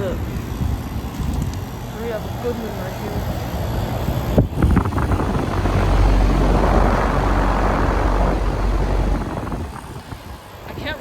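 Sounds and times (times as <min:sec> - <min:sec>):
air-conditioner fan whoosh: 0:00.0 - 0:11.0
low hum: 0:02.8 - 0:11.0.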